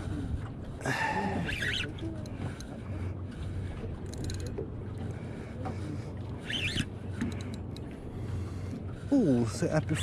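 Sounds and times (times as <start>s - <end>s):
boat motor humming: 0.0s - 10.0s.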